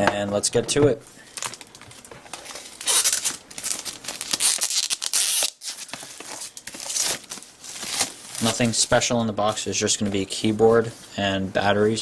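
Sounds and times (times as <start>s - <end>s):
packaging being torn open: 2.5s - 8.6s.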